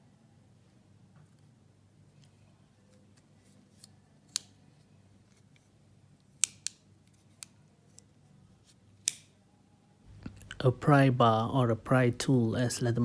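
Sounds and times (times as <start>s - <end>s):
multitool clicking: 4.3s - 4.6s, 6.4s - 8.1s, 9.0s - 9.4s.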